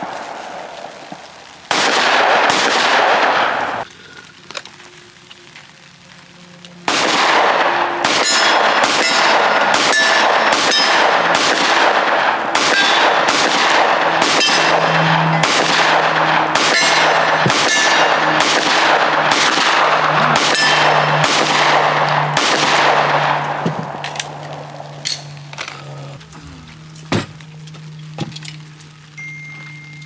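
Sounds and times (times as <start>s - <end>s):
gunshots with long echo: 0.0s - 3.9s, 6.8s - 25.6s.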